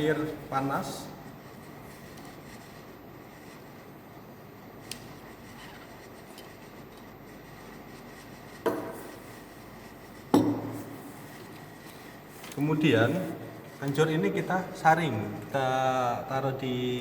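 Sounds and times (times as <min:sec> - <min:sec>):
kitchenware knocks with ring: 0:10.3 - 0:10.8.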